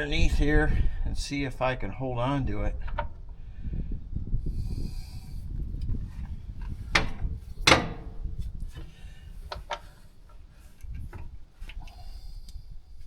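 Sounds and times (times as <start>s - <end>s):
hand tools clanking on metal: 6.6s - 11.2s.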